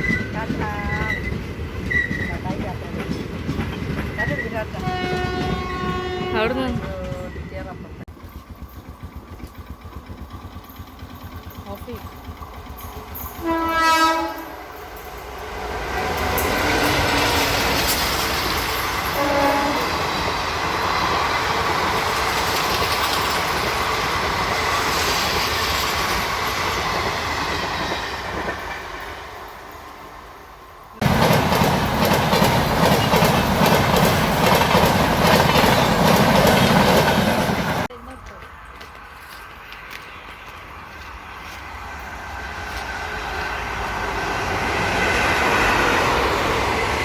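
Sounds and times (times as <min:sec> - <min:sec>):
train wheel clatter: 0:00.0 - 0:30.0, 0:31.0 - 0:40.5
train rail noise: 0:00.0 - 0:47.0
train horn blast: 0:04.8 - 0:06.8, 0:13.4 - 0:14.8, 0:19.1 - 0:20.0.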